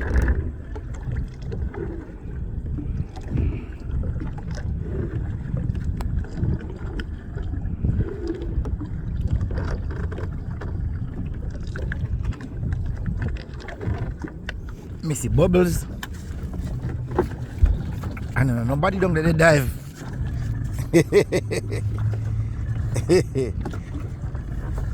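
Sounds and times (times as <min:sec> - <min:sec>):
boat engine rumbling: 0:00.0 - 0:24.9
water noise: 0:00.0 - 0:24.9
wind on microphone: 0:00.0 - 0:24.9.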